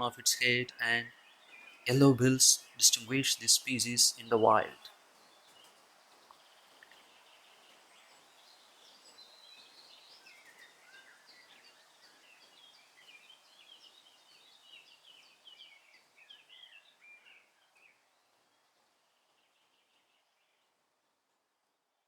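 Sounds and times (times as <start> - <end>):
small birds chirping: 0.0 - 20.7.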